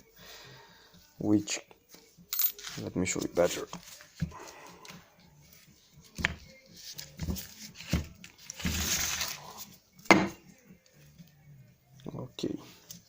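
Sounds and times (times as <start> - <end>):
metal parts clinking: 2.4 - 2.8
scrape or rustle: 8.6 - 9.7.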